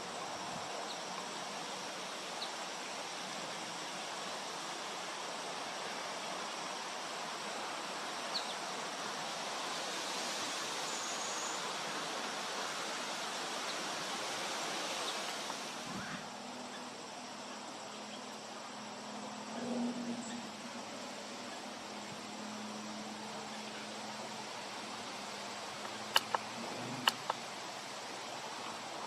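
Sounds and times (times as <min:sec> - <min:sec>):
outdoor background hiss: 0:00.0 - 0:29.0
bird chirps: 0:25.8 - 0:27.4.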